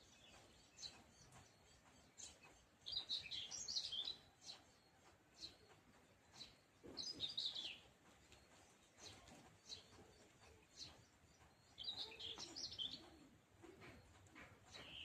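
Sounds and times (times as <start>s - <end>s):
small birds chirping: 0.0s - 15.0s.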